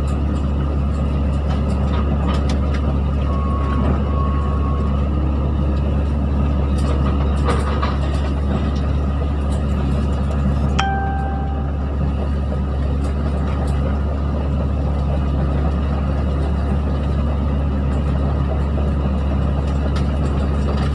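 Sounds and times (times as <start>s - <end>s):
excavator diesel engine running: 0.0s - 20.9s
steady high tone: 10.8s - 12.3s.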